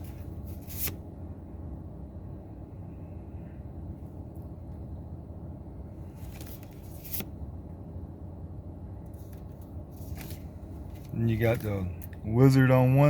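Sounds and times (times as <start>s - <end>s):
trading cards rustling: 0.0s - 1.0s, 9.2s - 12.1s
low background rumble: 0.0s - 13.0s.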